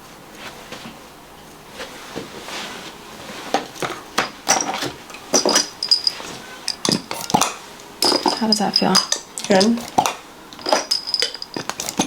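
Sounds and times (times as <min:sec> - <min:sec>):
cupping cups clicking and clinking: 0:03.5 - 0:12.0.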